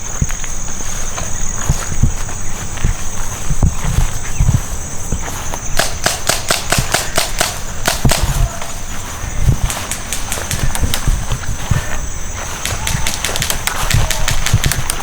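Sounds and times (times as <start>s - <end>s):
dull thumps of movement: 0.0s - 15.0s
airsoft guns firing: 5.8s - 11.6s, 12.4s - 15.0s.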